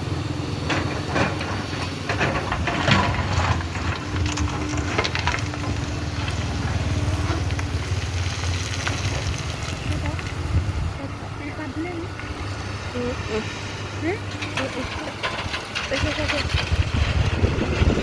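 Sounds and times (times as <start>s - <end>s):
excavator diesel engine running: 0.0s - 18.0s
bucket scraping sand and gravel: 1.3s - 10.4s, 13.0s - 18.0s.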